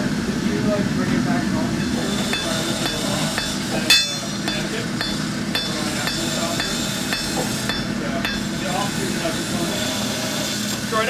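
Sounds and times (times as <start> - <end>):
steady background noise: 0.0 - 11.0
hammer striking steel on anvil: 1.8 - 9.1.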